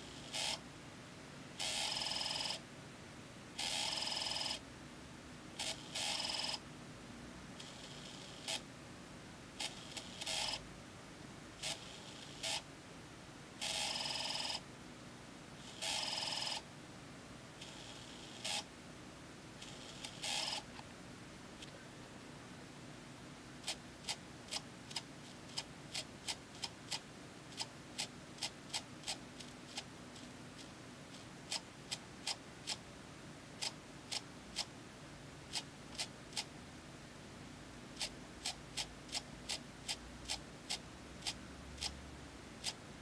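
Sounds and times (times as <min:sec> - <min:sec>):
phone vibration motor clicking: 0:09.6 - 0:10.6, 0:19.6 - 0:20.7.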